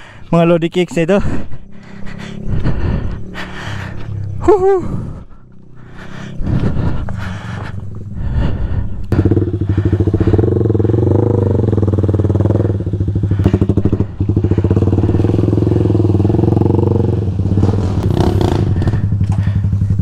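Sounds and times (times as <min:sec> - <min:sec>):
dirt bike engine running: 0:00.0 - 0:20.0.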